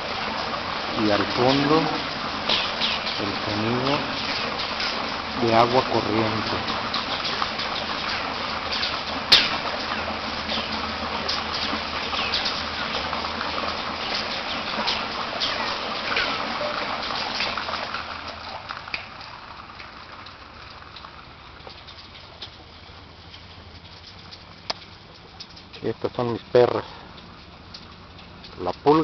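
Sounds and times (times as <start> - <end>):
water running: 0.0 - 21.9
water splashing in a well: 0.0 - 29.0.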